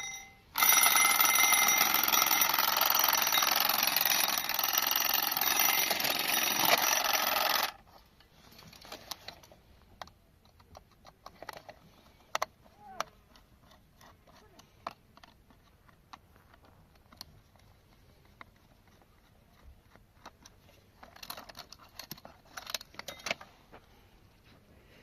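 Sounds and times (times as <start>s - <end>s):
small metal clock parts clicking: 10.0s - 23.4s
metal parts rattling: 21.0s - 23.4s.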